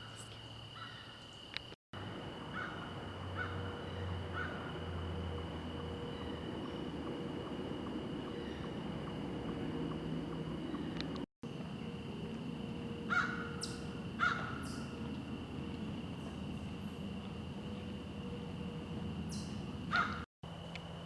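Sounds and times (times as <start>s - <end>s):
low rumbling noise: 2.0s - 14.2s.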